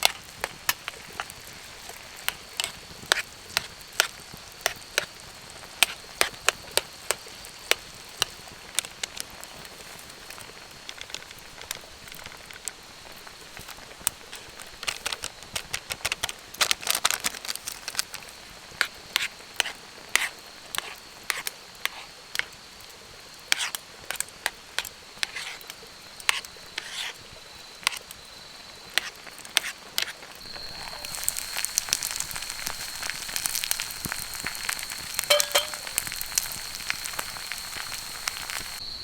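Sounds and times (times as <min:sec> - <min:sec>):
campfire crackling: 0:00.0 - 0:28.2, 0:28.8 - 0:38.9
thin high tone: 0:34.6 - 0:38.8.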